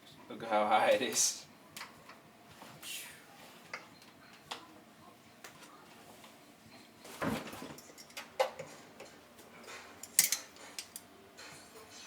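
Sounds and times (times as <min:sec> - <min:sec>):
tools and parts clicking: 0:09.6 - 0:11.1.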